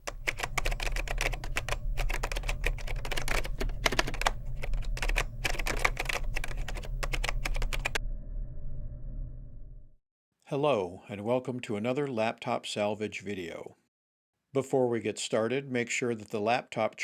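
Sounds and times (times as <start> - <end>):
rapid typing on keyboard: 0.0 - 8.0
steady low hum: 0.0 - 10.0.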